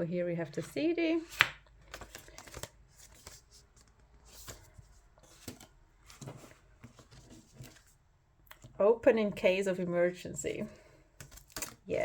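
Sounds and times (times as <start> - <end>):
card and plastic rustling: 1.8 - 8.0, 11.2 - 11.9.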